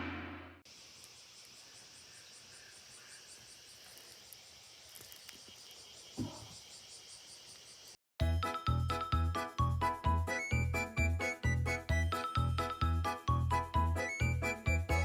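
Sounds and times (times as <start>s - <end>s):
insects chirping: 0.7s - 8.0s
background music: 8.2s - 15.0s.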